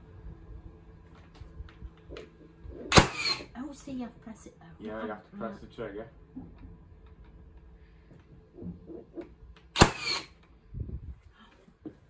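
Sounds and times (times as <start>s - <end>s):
nail gun firing crack: 2.9s - 3.5s, 9.7s - 10.4s.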